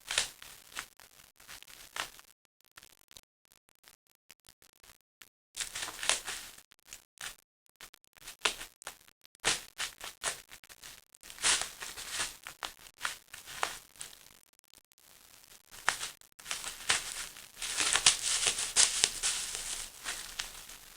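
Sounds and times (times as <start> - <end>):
paper and bubble wrap crinkling: 0.0 - 2.1, 5.6 - 6.6, 8.3 - 8.8, 9.4 - 14.2, 15.7 - 20.9.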